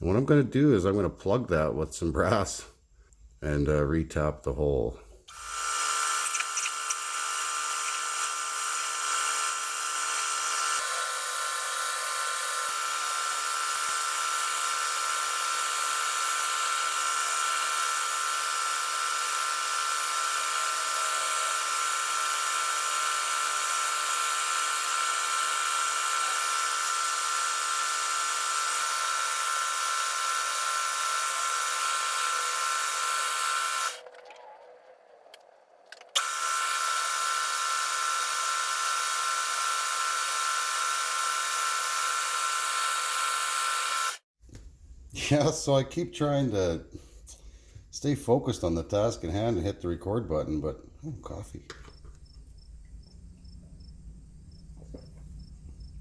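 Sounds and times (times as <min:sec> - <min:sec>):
power tool motor whining: 0:05.3 - 0:34.8, 0:36.0 - 0:44.3.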